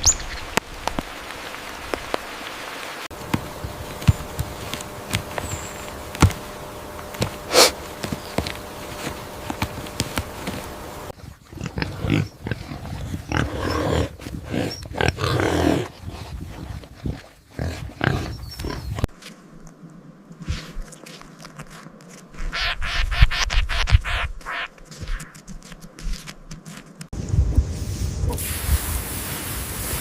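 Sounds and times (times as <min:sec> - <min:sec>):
steady hiss: 0:00.0 - 0:11.2, 0:27.6 - 0:30.0
animal noisy bursts: 0:03.4 - 0:11.1.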